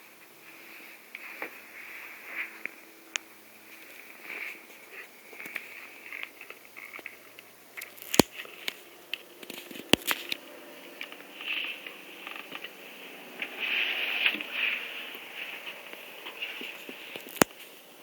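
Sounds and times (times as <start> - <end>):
bone cracking: 7.8 - 8.4, 17.2 - 17.6.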